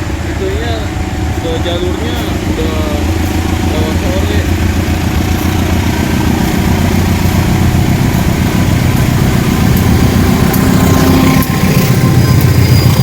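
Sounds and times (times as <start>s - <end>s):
locomotive diesel engine running: 0.0s - 13.0s.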